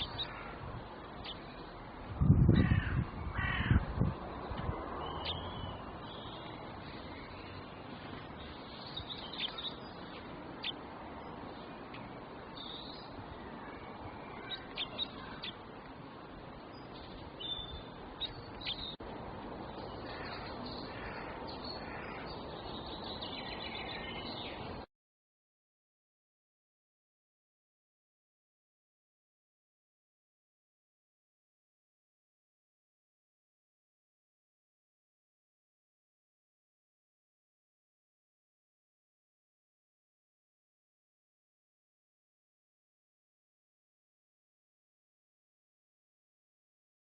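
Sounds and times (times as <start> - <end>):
steady background hiss: 0.0 - 2.3, 3.0 - 24.9
birds chirping: 0.0 - 24.9.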